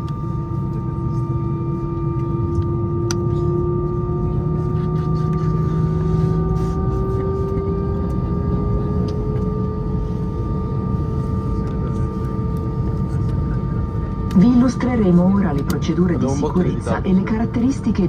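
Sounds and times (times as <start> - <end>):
aircraft cabin rumble and hum: 0.0 - 18.0
rising whine: 0.0 - 18.0.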